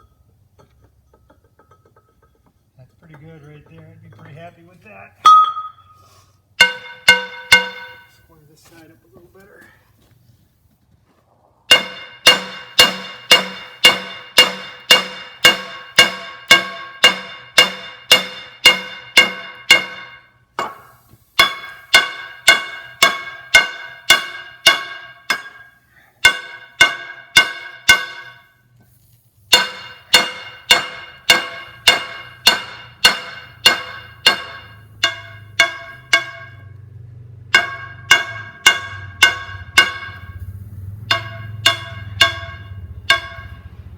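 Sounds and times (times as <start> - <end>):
hammer ringing on steel anvil: 5.2 - 6.0, 6.6 - 8.3, 11.7 - 28.6, 29.5 - 36.8, 37.5 - 43.9.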